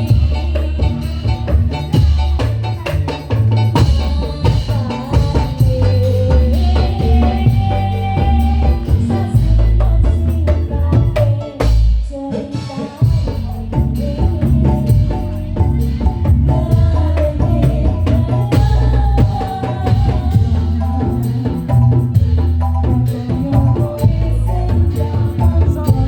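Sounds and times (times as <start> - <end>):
deep bass notes: 0.0 - 12.0, 13.0 - 26.0
bamboo slit drums and drums: 0.0 - 12.2, 12.9 - 26.0
held melody line: 0.0 - 26.0.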